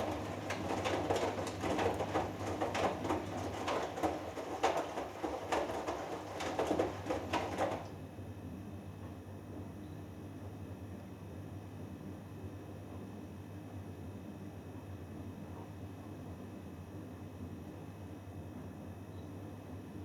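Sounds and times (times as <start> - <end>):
washing machine drum sloshing: 0.0 - 8.0.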